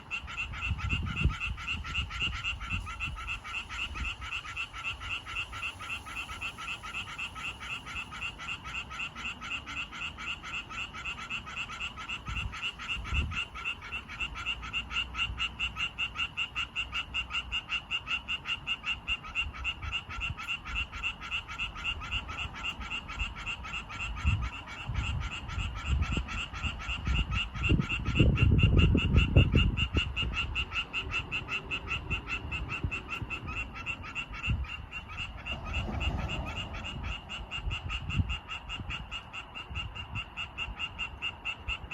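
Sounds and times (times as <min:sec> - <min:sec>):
frogs croaking in chorus: 0:00.0 - 0:41.9
low rumble: 0:34.5 - 0:38.4.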